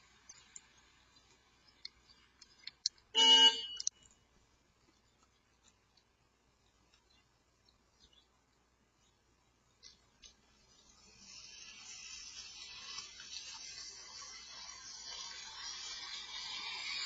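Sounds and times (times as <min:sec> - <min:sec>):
car horn honk: 0:03.2 - 0:03.9.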